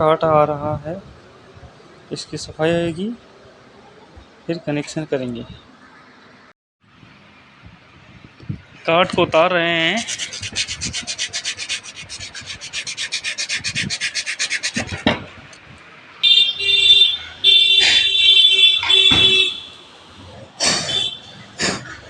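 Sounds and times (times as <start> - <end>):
scraping strokes on metal: 10.0 - 15.1.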